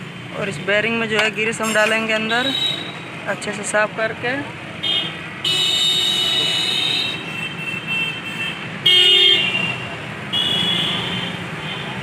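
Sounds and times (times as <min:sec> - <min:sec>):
road traffic passing: 0:00.0 - 0:12.0
vehicle horns: 0:01.6 - 0:03.1, 0:04.8 - 0:12.0.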